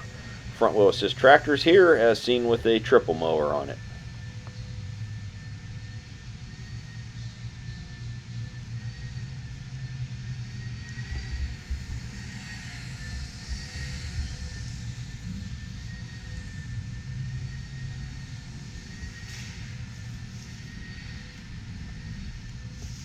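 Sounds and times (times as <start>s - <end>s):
exhibition hall rumble and hum: 0.0s - 6.4s
thin steady tones: 0.0s - 23.0s.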